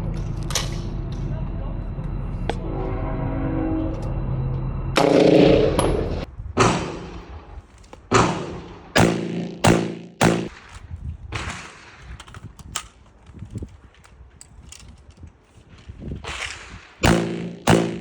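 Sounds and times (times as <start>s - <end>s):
gunshots cracking and ringing: 6.6s - 7.3s, 8.1s - 10.7s, 16.3s - 18.0s.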